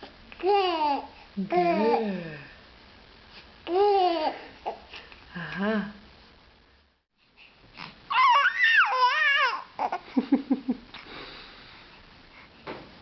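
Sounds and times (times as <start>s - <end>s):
baby squealing: 8.1s - 9.9s.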